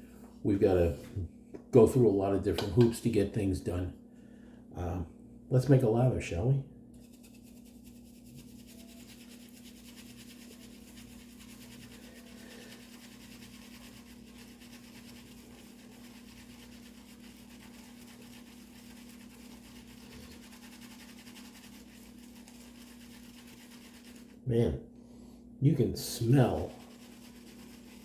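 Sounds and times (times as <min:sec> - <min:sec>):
shaving brush swishing on soap: 0:07.0 - 0:24.5, 0:26.0 - 0:28.0.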